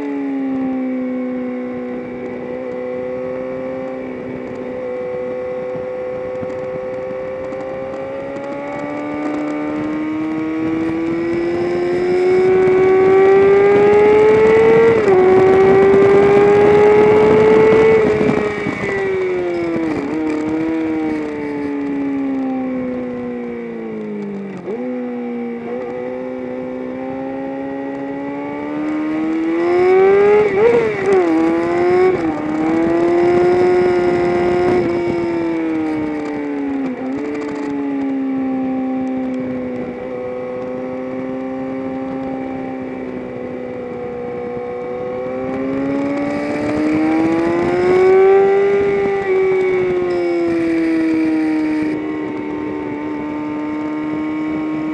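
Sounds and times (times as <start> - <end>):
vehicle engine running hard: 1.3 - 24.8, 39.0 - 54.9.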